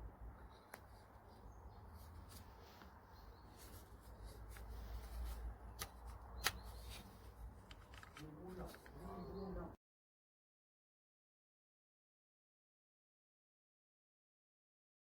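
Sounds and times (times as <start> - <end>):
light rustling: 0.5 - 9.3
small handling clicks: 5.8 - 9.0.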